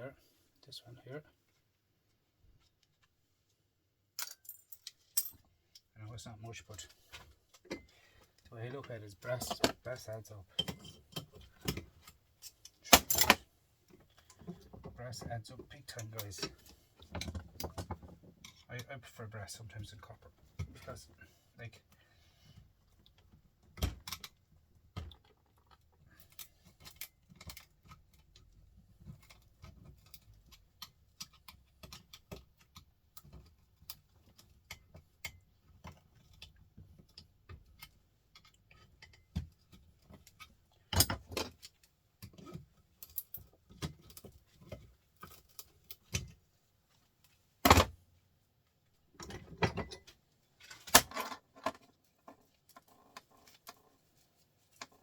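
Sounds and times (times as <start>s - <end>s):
metal parts and tools clinking: 4.2s - 5.9s, 10.5s - 13.4s.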